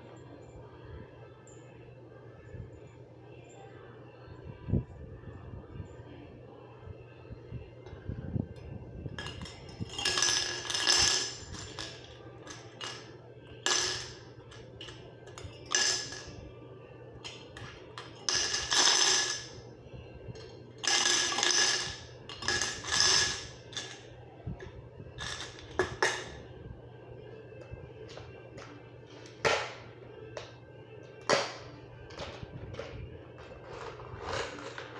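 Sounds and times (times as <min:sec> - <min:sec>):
nails clattering into metal cans: 0:09.2 - 0:16.4, 0:17.2 - 0:19.6, 0:20.4 - 0:24.0, 0:25.2 - 0:26.3, 0:31.2 - 0:34.9.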